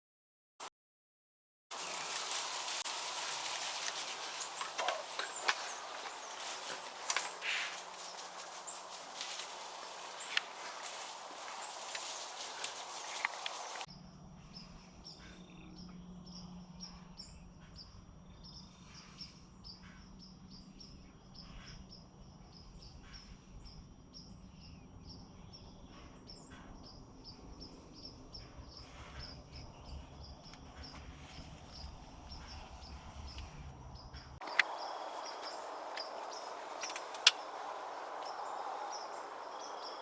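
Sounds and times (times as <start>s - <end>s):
soft rustles: 1.7s - 13.9s, 34.4s - 40.0s.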